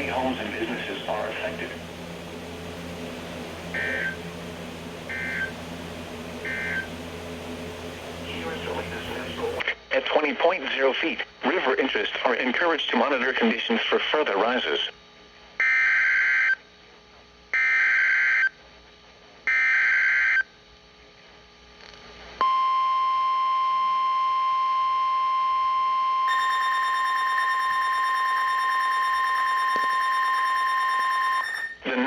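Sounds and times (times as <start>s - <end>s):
warbling data tones: 0.0s - 9.6s.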